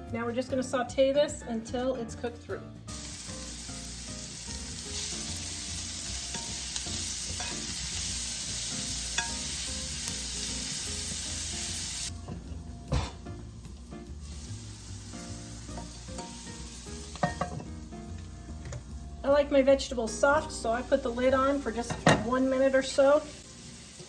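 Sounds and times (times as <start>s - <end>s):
vegetables sizzling in a frying pan: 2.9s - 24.0s.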